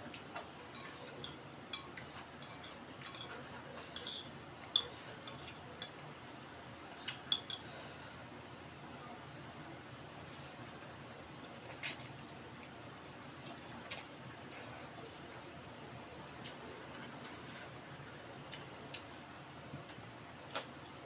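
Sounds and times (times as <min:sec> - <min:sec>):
utensils clinking against a bowl: 0:00.3 - 0:06.0, 0:07.1 - 0:08.0.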